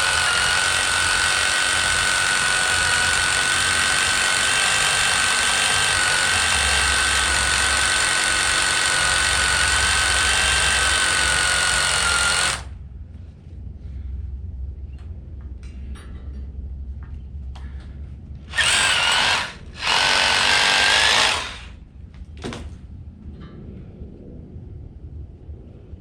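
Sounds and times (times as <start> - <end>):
hammer drill boring into concrete: 0.0 - 12.7, 18.5 - 21.8.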